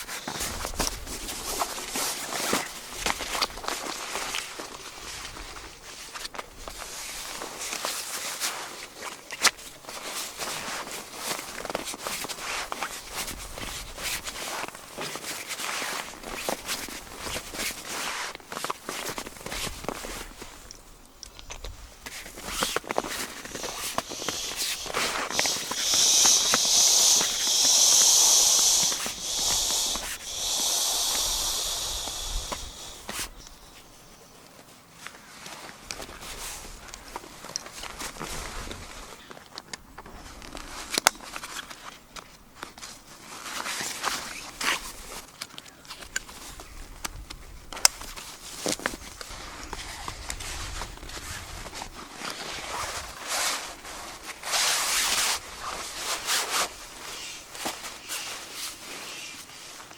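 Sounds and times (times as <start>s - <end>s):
rustling and scuffing: 0.0s - 20.9s, 21.6s - 27.8s, 48.0s - 59.9s
loud steady hiss: 0.0s - 21.2s, 21.8s - 34.0s, 52.6s - 59.9s
rustling swishes: 22.1s - 33.9s.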